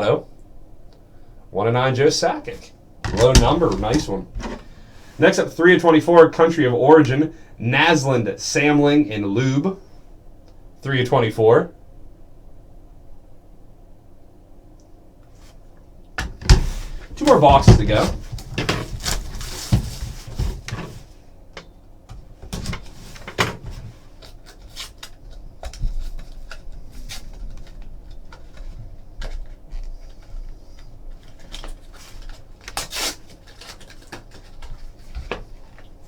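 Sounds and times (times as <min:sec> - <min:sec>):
rustling of packaging: 0:16.6 - 0:21.2, 0:22.5 - 0:36.0.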